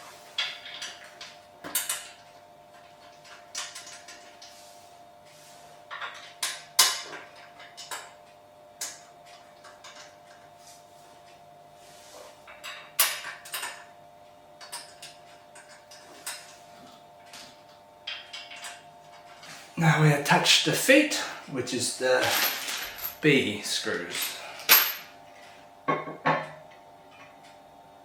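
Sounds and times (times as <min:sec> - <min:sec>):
metal parts clinking and clattering: 0:22.2 - 0:25.1.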